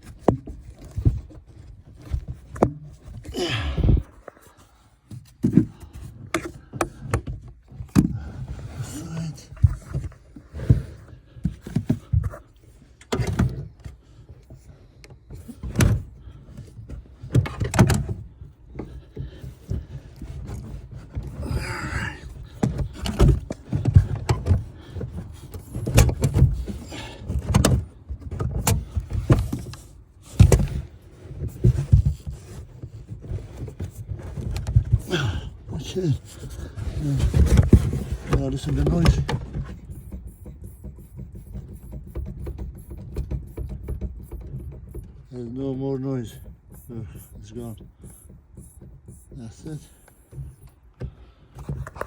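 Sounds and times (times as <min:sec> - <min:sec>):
knocks clicks and thunks: 0:00.0 - 0:52.0.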